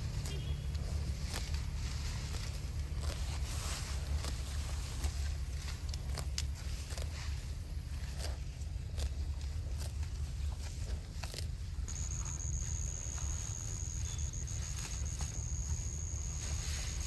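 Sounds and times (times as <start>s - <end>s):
cattle hooves clicking: 0.0s - 17.0s
steady low rumble: 0.0s - 17.0s
thin high-pitched tone: 11.9s - 17.0s.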